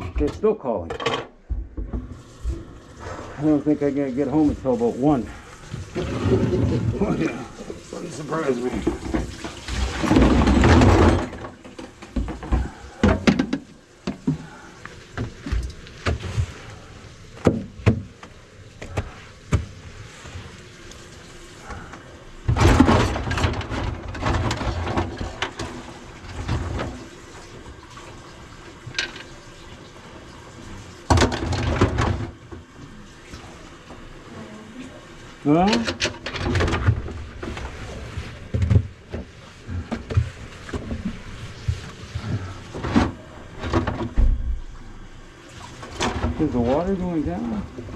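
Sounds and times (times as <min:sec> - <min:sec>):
tools knocking and clattering: 0:00.0 - 0:01.9
water rushing bursts: 0:02.1 - 0:11.6.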